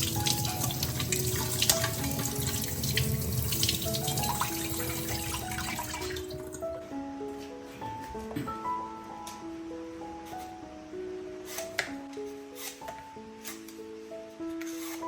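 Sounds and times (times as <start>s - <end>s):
tap water running into sink: 0.0s - 6.6s
soft background music: 0.0s - 15.0s.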